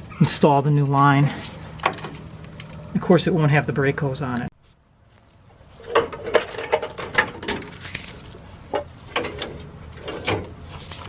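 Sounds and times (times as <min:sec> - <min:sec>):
metal brake line clicking and scraping: 0:05.7 - 0:11.0.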